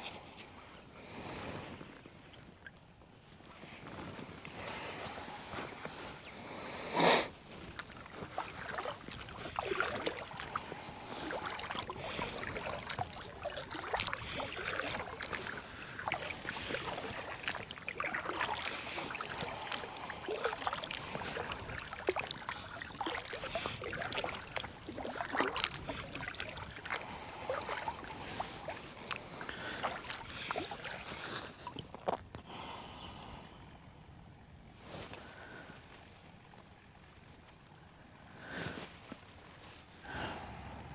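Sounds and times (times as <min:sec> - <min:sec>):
paddle splashing in water: 0:07.5 - 0:32.2.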